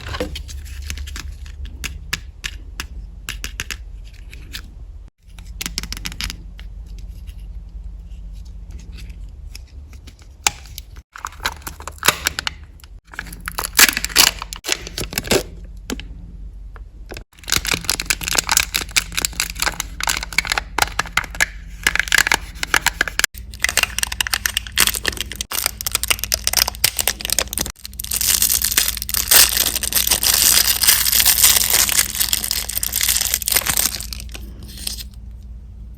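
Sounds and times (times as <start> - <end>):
packaging tearing and crinkling: 13.1 - 15.4, 17.4 - 35.1.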